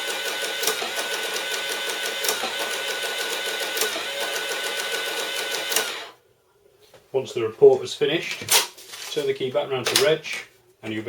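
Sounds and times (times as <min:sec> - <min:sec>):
printer clicks: 0:00.0 - 0:06.1
cash register printer running: 0:00.0 - 0:06.2.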